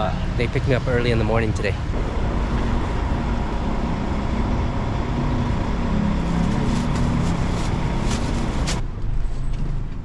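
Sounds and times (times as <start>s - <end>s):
bus engine running: 0.0s - 10.0s
traffic: 0.0s - 10.0s.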